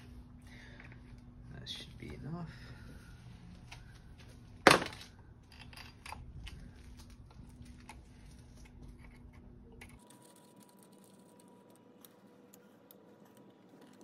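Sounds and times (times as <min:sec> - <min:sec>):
metal parts clicking and rattling: 0:04.7 - 0:08.0.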